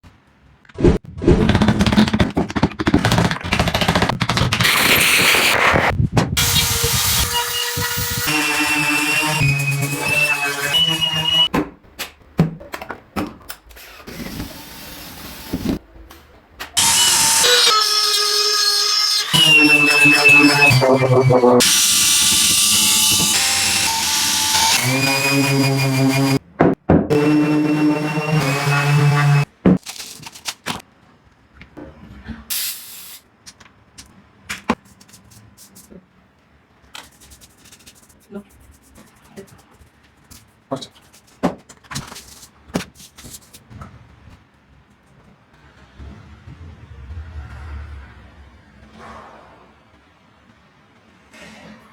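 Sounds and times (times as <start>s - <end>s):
sharp clicks and knocks: 1.3s - 5.3s.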